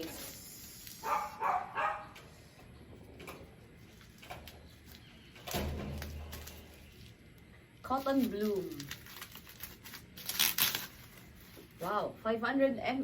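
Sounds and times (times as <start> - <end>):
rustling scrape: 7.9 - 12.0.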